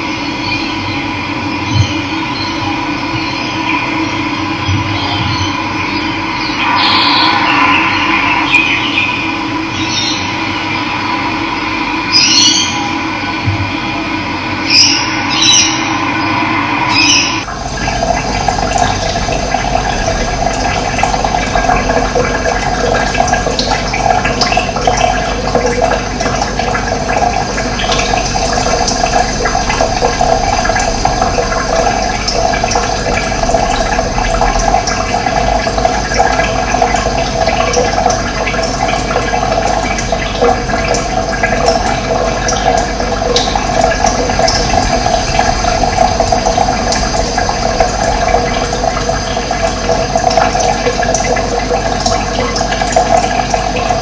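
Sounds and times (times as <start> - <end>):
birds chirping: 1.7 - 11.0, 14.6 - 25.4
running water rushing: 3.6 - 54.0.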